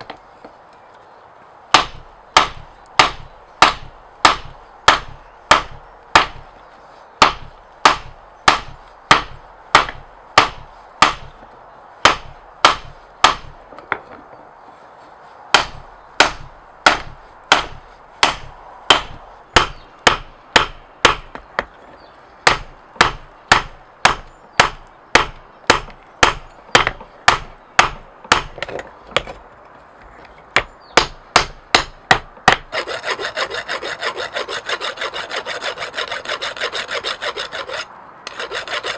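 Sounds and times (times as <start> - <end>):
file rasping on steel: 32.5 - 38.9.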